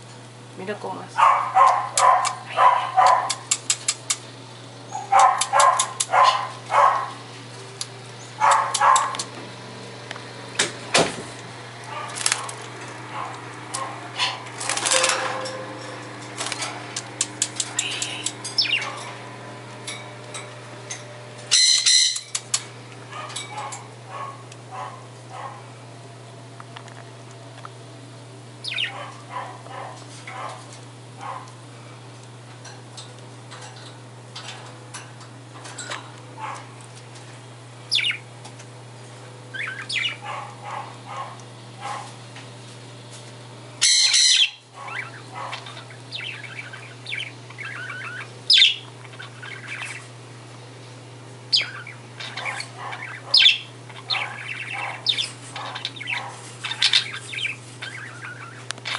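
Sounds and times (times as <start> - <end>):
steady low hum: 0.0 - 58.9
budgie chirping and chattering: 17.5 - 19.0, 28.6 - 29.0, 51.5 - 58.9.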